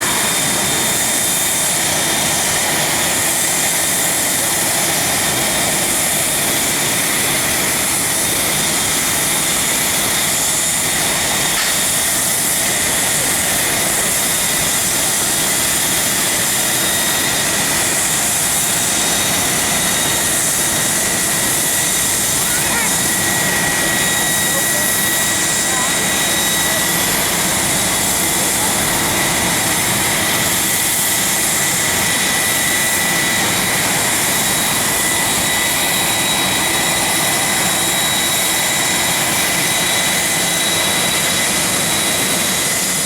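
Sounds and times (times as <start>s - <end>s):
jet engines running with whine: 0.0s - 43.0s.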